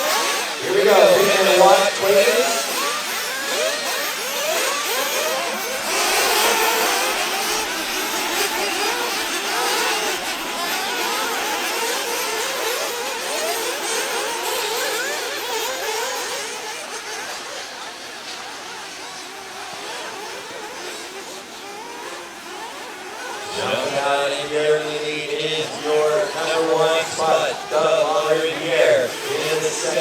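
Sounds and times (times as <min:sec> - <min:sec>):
rc buggy engines revving: 0:00.0 - 0:30.0.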